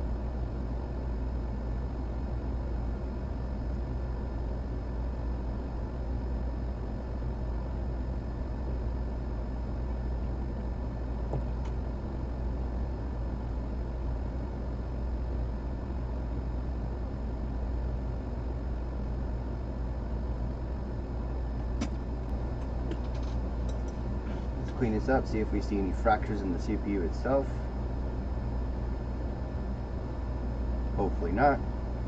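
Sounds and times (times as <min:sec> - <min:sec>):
small fan whirring: 0:00.0 - 0:32.0.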